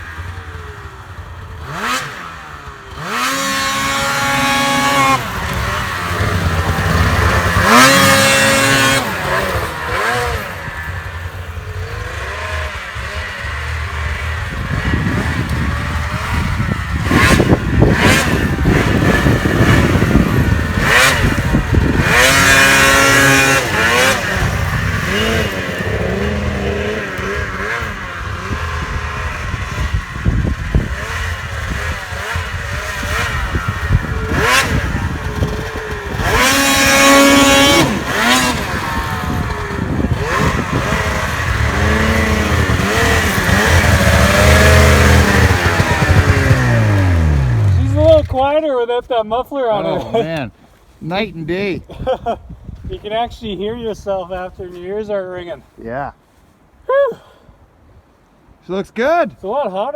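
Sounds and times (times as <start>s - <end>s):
snowmobile engine revving: 0.0s - 52.4s.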